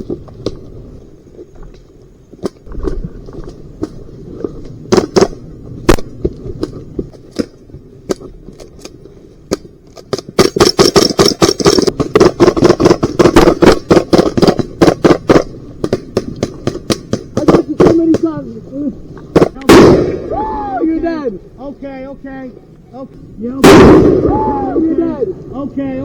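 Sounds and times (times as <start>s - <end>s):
airsoft guns firing: 9.5s - 18.3s, 19.3s - 20.3s, 23.6s - 24.7s.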